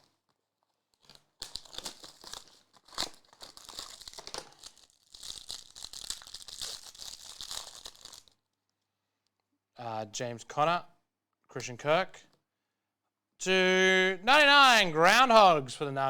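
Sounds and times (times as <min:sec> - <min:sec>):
plastic wrapper crinkling and tearing: 0:00.0 - 0:08.8.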